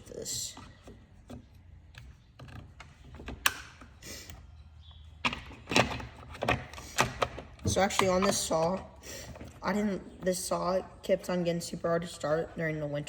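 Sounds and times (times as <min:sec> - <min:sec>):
clicks and knocks of parts: 0:00.5 - 0:09.6.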